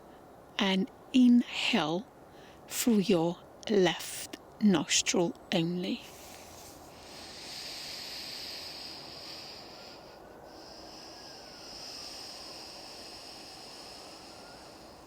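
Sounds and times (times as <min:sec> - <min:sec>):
person breathing through nose: 0:06.1 - 0:15.0.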